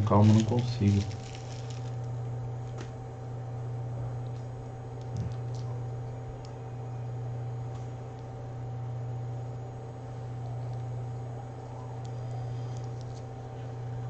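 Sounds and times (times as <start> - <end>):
low hum with hiss: 0.0 - 14.0.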